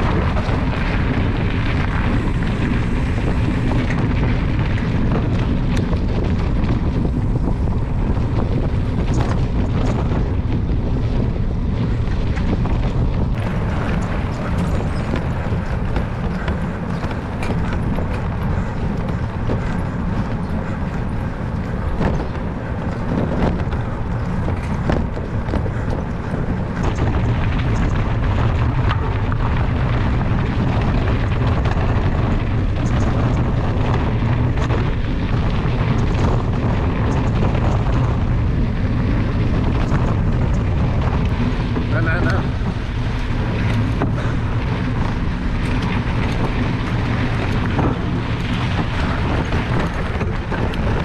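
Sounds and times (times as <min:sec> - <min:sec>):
wind buffeting microphone: 0:00.0 - 0:51.0.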